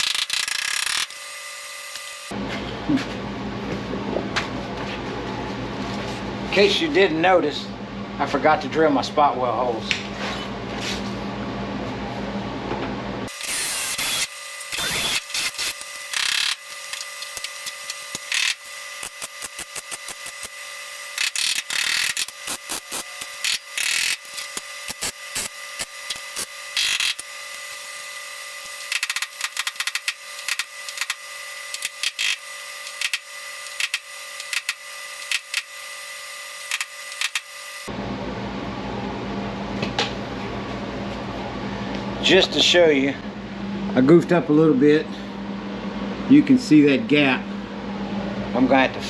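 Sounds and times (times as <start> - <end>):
sharp clicks and crackling bursts: 0.0 - 2.3, 13.3 - 37.9
power tool high whine: 0.0 - 2.4, 13.3 - 37.9.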